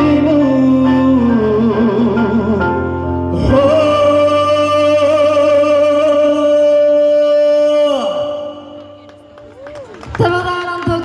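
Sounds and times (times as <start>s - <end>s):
man singing long note: 0.0s - 8.8s
karaoke backing track: 0.0s - 11.0s.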